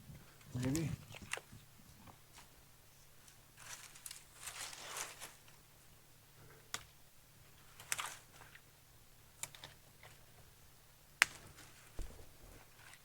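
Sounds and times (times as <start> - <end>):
soft rustling and scraping: 0.1 - 5.6, 11.5 - 13.0.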